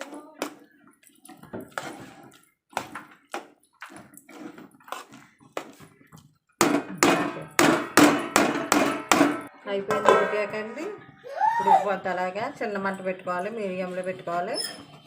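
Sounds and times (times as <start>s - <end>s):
spoon scraping a metal pot: 0.0s - 3.1s, 3.8s - 5.9s, 13.0s - 15.0s.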